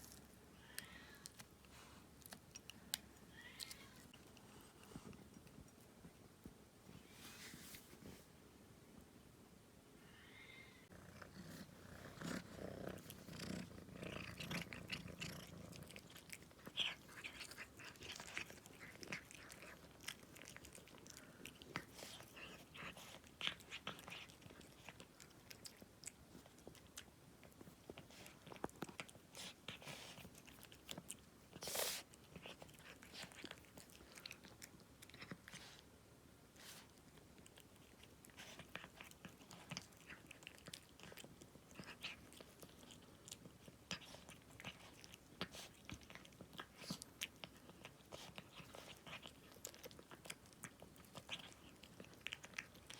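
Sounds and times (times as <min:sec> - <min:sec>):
cat chewing and licking: 0:00.0 - 0:06.7, 0:10.9 - 0:52.9
cat purring: 0:10.8 - 0:26.6.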